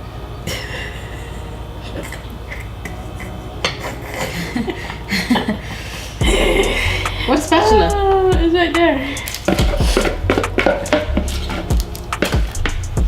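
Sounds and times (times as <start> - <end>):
utensils scraping a bowl: 9.2 - 12.4.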